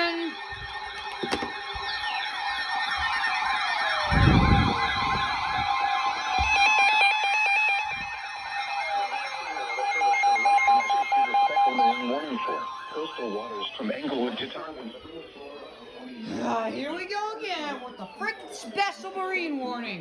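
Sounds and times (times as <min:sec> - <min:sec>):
rapid beeping: 0:00.0 - 0:19.6
warbling alert siren tone: 0:00.0 - 0:20.0.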